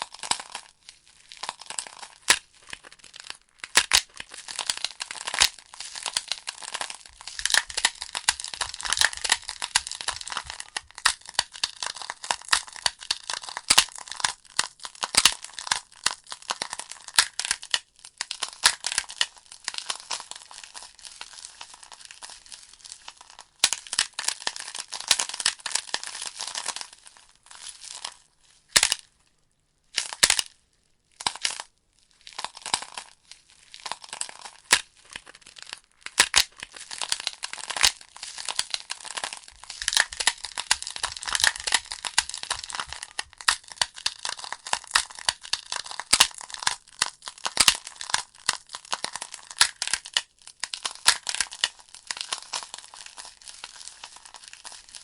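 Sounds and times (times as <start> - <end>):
burning logs crackling and popping: 3.4 - 14.0, 36.0 - 55.0.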